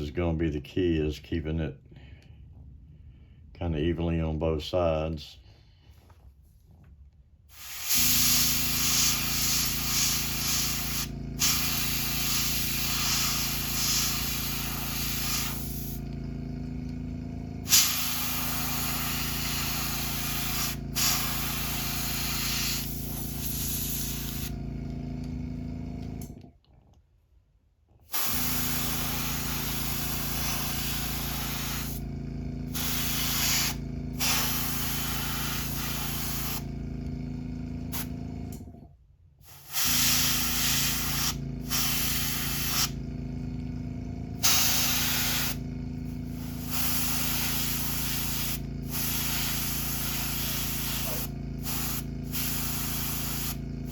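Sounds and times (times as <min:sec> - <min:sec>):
airbrush spraying hiss: 0:07.5 - 0:16.0, 0:17.6 - 0:24.5, 0:28.1 - 0:32.0, 0:32.7 - 0:36.7, 0:39.5 - 0:43.0, 0:44.4 - 0:45.6, 0:46.2 - 0:53.9
air compressor hum: 0:07.5 - 0:26.5, 0:28.0 - 0:53.9.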